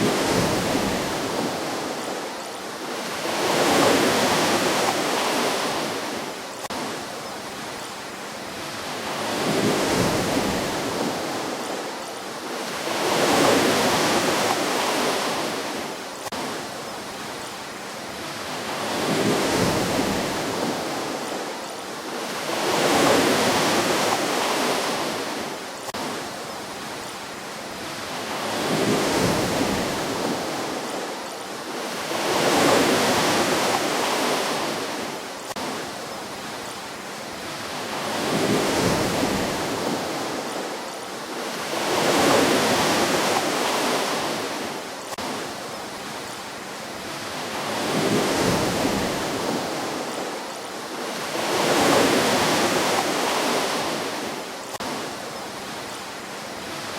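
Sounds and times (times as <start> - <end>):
ocean waves breaking on shore: 0.0 - 56.9.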